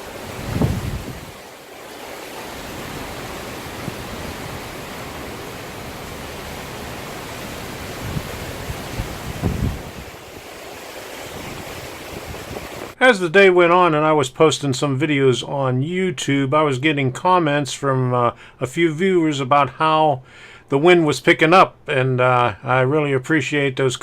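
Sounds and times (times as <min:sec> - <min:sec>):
strong wind rushing: 0:00.0 - 0:01.4, 0:02.5 - 0:10.6, 0:11.2 - 0:13.0
wind gusts buffeting microphone: 0:00.0 - 0:13.0.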